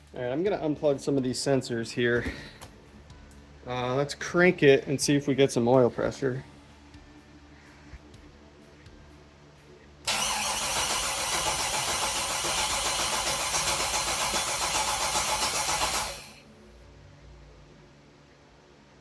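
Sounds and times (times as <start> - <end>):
starter motor cranking engine: 10.1 - 16.4.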